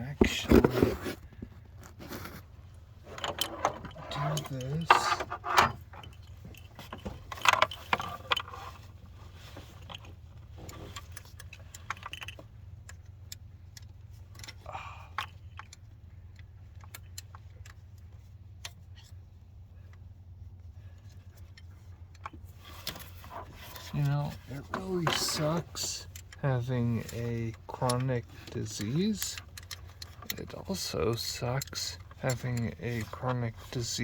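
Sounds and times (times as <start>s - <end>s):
steady low hum: 0.0s - 34.0s
tools clattering: 3.0s - 9.0s, 22.2s - 34.0s
metal tools clinking: 3.1s - 8.9s, 22.6s - 34.0s.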